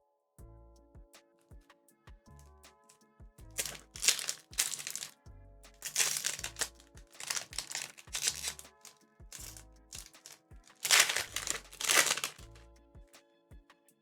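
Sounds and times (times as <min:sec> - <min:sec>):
background music: 0:00.5 - 0:14.0
foil wrapper crinkling: 0:03.6 - 0:05.2, 0:05.8 - 0:12.6.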